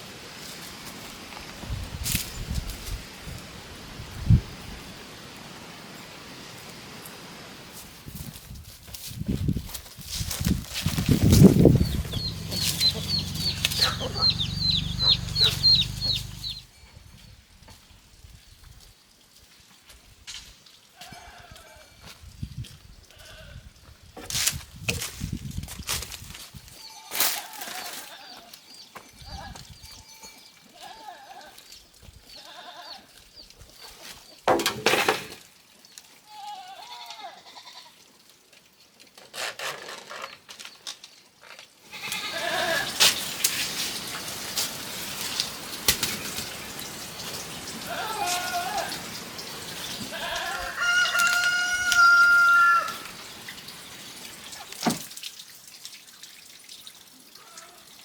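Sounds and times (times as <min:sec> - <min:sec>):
rooster crowing: 0:12.8 - 0:16.5, 0:50.5 - 0:53.0
goats bleating: 0:32.4 - 0:33.0, 0:36.3 - 0:38.0, 0:41.9 - 0:43.0, 0:47.8 - 0:49.1, 0:50.1 - 0:53.0.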